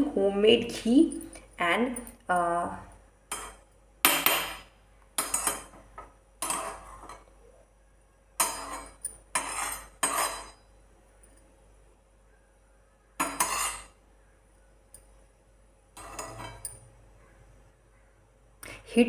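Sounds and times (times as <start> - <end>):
metal spoon clinking on vessel: 3.3 - 5.8, 6.4 - 7.2, 8.4 - 10.7, 13.2 - 14.0, 16.0 - 16.9.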